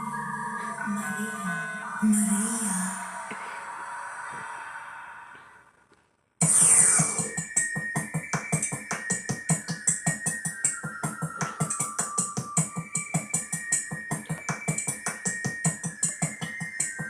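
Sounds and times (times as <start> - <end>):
synthesizer tones: 0.0 - 3.7, 6.4 - 17.0
drum machine beat: 6.4 - 17.0.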